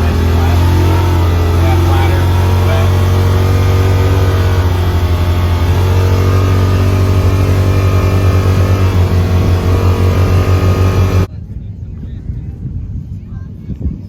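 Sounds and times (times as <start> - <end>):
atv engine drone: 0.0 - 11.3.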